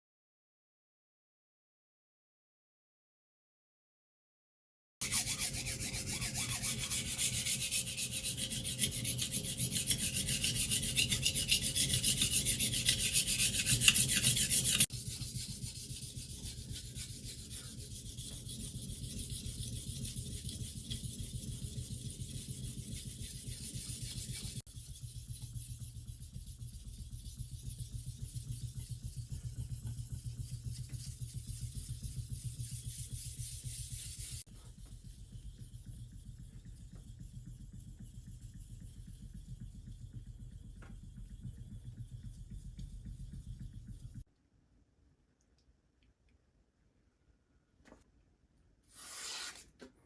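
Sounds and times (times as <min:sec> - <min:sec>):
knife grinding on whetstone: 0:05.0 - 0:21.1.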